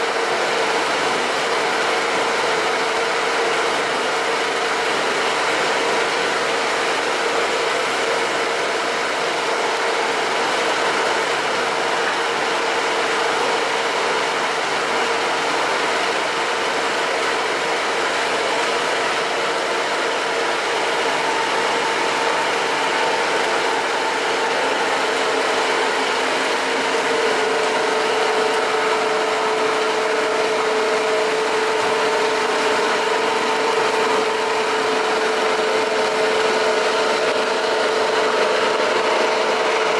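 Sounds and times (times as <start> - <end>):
wet grinder motor whining: 14.4 - 39.9.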